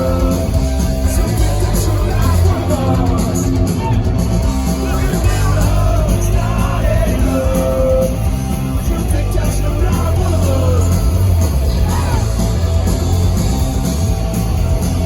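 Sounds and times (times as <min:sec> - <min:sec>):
shouted lead vocal: 0:00.0 - 0:12.8
punk rock band playing live: 0:00.0 - 0:15.0.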